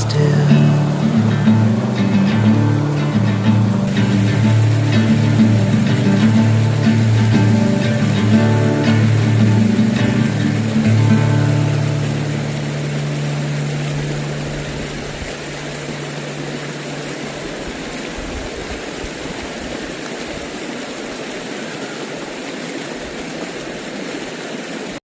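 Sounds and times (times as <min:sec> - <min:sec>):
low guitar note: 0:00.0 - 0:16.9
small waterfall rushing: 0:00.0 - 0:25.0.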